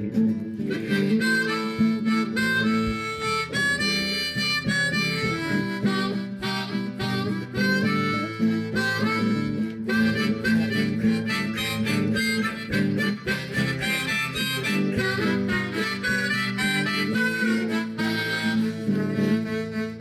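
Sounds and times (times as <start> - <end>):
acoustic guitar strumming: 0.0 - 20.0
held melody line: 0.0 - 20.0.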